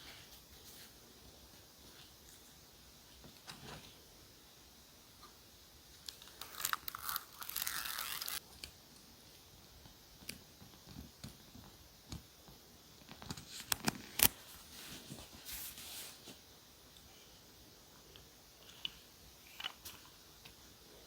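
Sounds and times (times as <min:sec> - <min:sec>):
paper tearing: 0:06.3 - 0:08.4.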